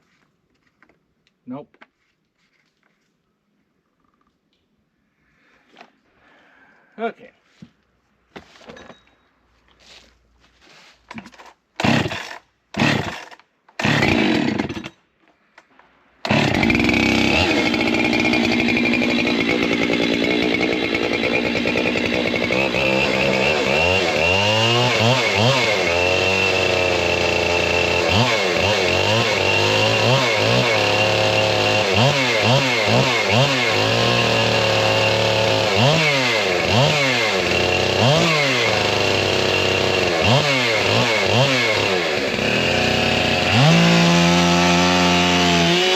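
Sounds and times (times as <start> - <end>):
chainsaw running under load: 11.3 - 15.0, 16.2 - 45.9.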